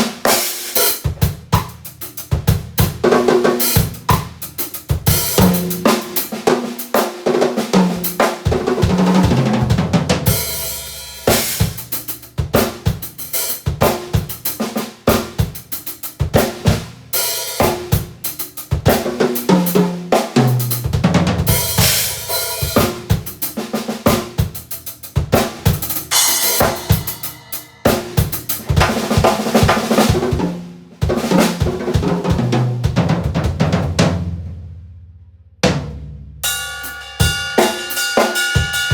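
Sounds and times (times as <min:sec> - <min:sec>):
drum kit grooves: 0:00.0 - 0:35.0, 0:35.6 - 0:38.9
cymbal crashes: 0:26.1 - 0:28.5, 0:36.4 - 0:38.9.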